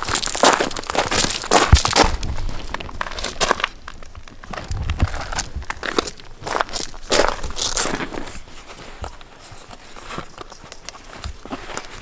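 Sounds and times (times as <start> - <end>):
footsteps crunching on loose ground: 0.0 - 12.0.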